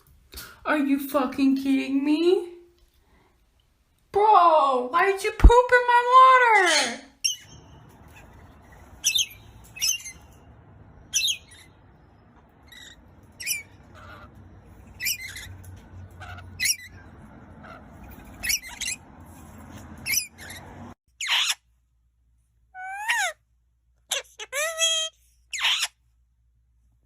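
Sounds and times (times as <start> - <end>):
parrot squawking: 6.4 - 19.1, 19.8 - 21.7, 22.8 - 23.4, 24.1 - 26.0.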